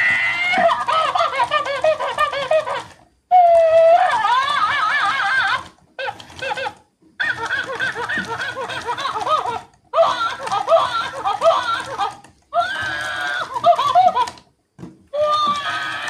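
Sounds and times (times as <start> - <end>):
toy electronic giggling and chattering: 0.0 - 14.5.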